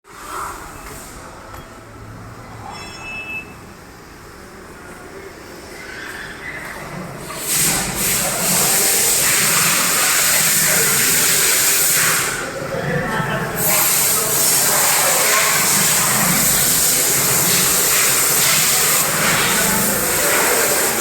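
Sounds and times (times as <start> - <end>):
workshop background noise: 0.1 - 21.0
high-pressure jet hissing: 7.3 - 12.5, 13.5 - 21.0.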